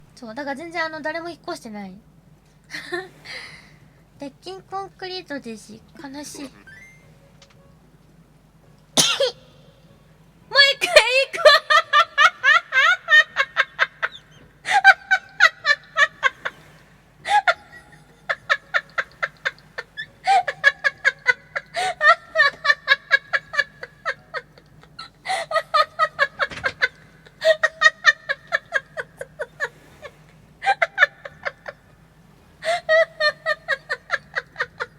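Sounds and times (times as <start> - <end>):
woman laughing uncontrollably: 11.0 - 29.8, 30.6 - 32.0, 32.6 - 34.9.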